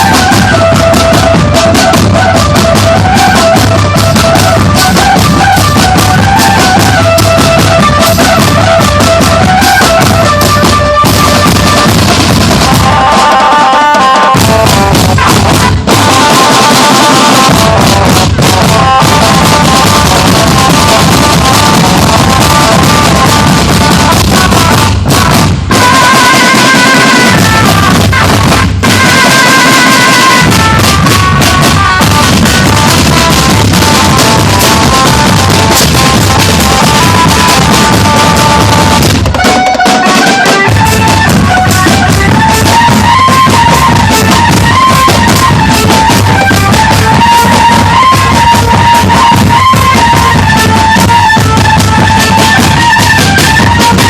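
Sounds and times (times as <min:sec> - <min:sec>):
marching percussion band: 0:00.0 - 0:54.0
snare and bass drums beating: 0:00.0 - 0:54.0.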